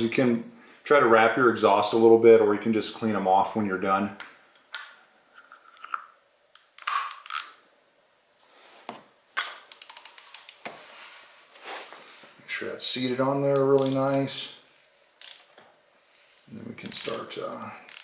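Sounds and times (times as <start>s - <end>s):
ratchet clicks: 6.6s - 7.5s, 9.7s - 10.6s, 13.8s - 14.2s, 15.2s - 15.5s, 16.8s - 18.0s.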